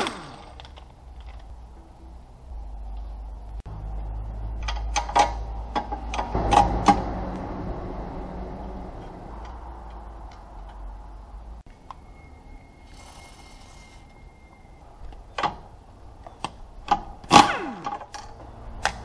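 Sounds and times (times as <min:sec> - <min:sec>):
steady low rumble: 0:00.2 - 0:13.0.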